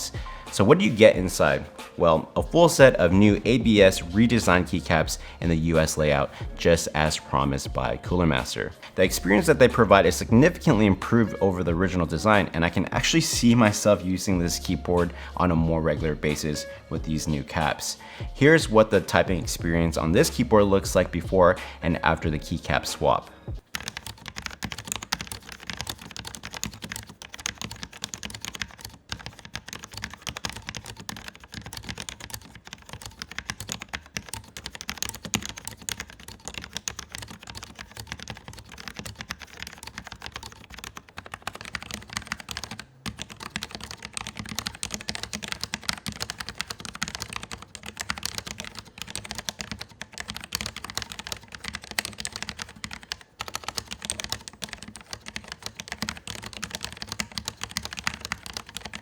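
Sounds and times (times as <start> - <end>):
fast mechanical keyboard typing: 0.0 - 1.7, 2.4 - 21.2, 23.6 - 59.0.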